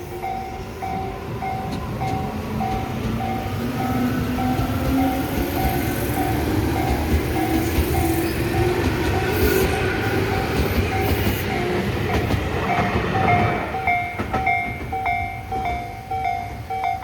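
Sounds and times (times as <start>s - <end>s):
electric train rumbling: 0.0s - 17.0s
railway crossing bell dinging: 0.0s - 17.0s
rail clatter: 0.9s - 17.0s.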